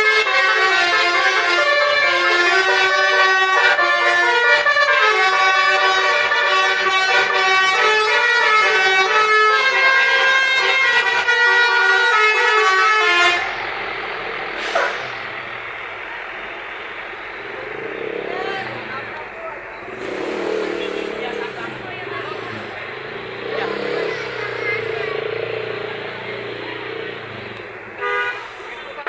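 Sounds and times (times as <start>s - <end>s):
steady background noise: 13.0s - 29.0s
musical air horn melody: 20.8s - 28.9s.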